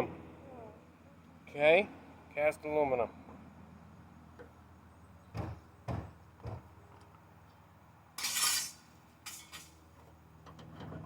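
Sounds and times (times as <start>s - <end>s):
rasping metal scrape: 8.2s - 9.7s
metal parts knocking and clinking: 8.2s - 9.8s.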